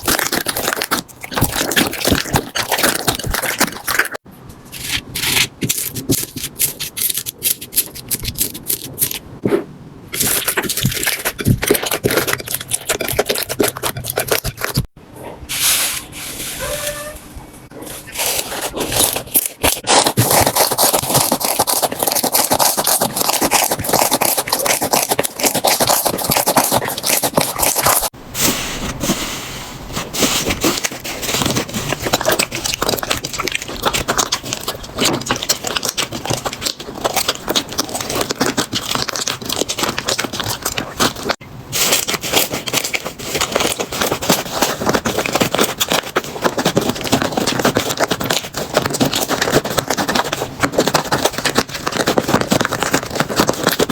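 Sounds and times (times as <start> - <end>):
slime crackling and popping: 0.0 - 4.2, 18.2 - 28.1, 30.2 - 53.9.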